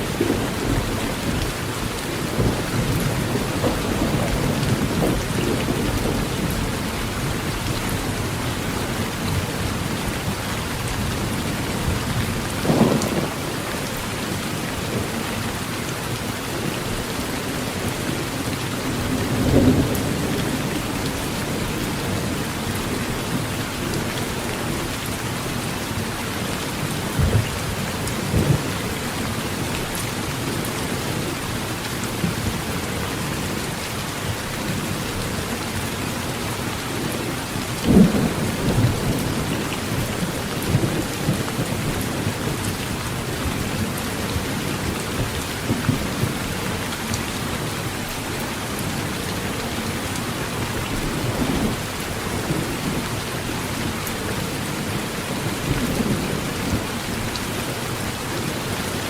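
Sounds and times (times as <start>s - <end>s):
heavy rain on a tin roof: 0.0s - 59.0s
thunder rumbling: 2.2s - 8.4s.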